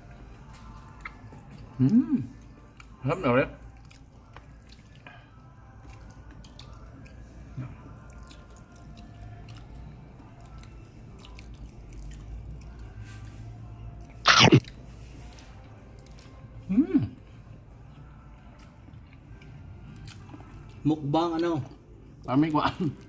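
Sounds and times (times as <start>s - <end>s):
person chewing: 0.4s - 3.0s, 3.6s - 13.0s, 14.0s - 16.3s, 17.8s - 20.8s
mouth clicks: 14.3s - 14.6s
short loud vocal sound: 14.3s - 14.6s.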